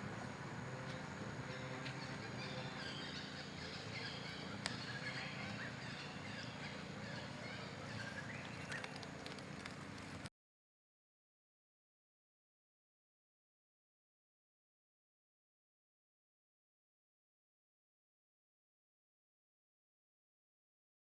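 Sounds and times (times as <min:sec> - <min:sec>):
steady low hum: 0:00.0 - 0:10.3
high chirping animal calls: 0:01.5 - 0:09.0.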